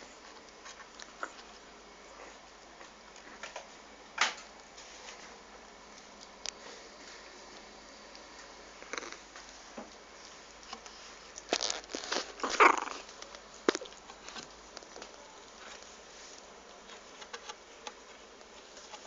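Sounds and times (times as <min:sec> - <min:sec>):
puppy noises: 0:00.0 - 0:03.6, 0:10.1 - 0:15.8.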